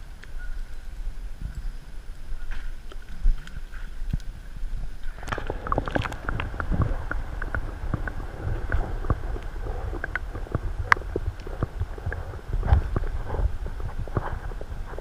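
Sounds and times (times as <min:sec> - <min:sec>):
wind rumbling on microphone: 0:00.0 - 0:15.0
small irregular clicks and taps: 0:05.1 - 0:13.4.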